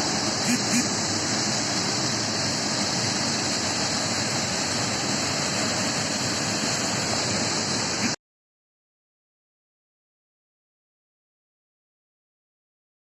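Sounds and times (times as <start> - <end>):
waterfall rushing: 0.0 - 8.2.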